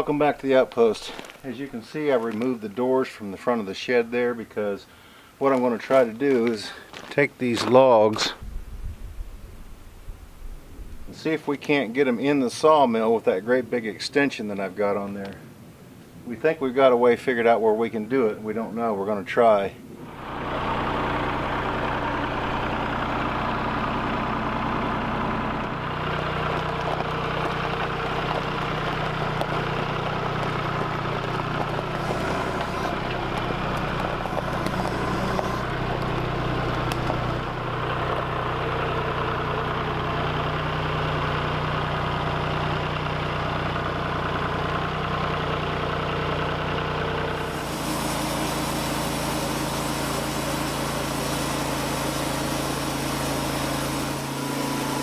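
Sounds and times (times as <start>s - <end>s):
engine running: 19.9s - 55.0s.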